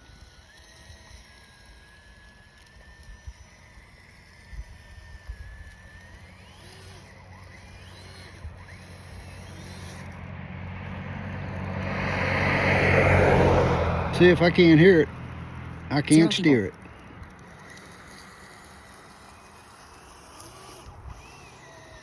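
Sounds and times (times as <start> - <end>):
car approaching: 5.9 - 22.0.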